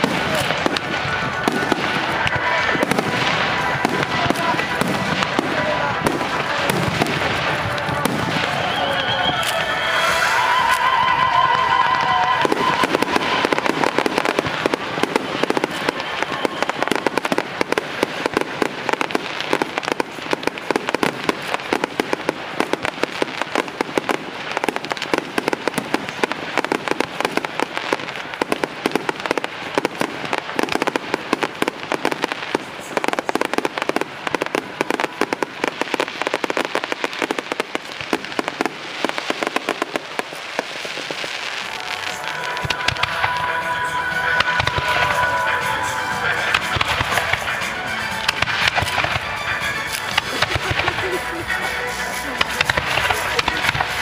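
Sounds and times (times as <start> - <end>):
fireworks crackling: 0.0 - 54.0.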